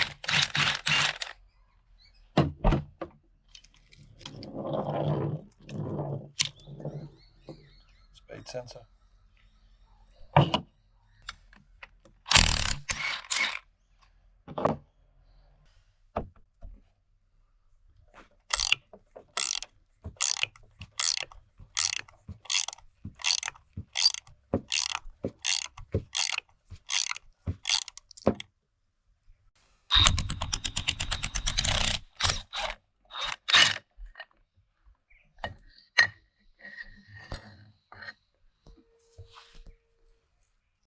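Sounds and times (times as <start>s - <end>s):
ratchet wrench clicking: 18.5s - 18.8s, 19.4s - 28.4s.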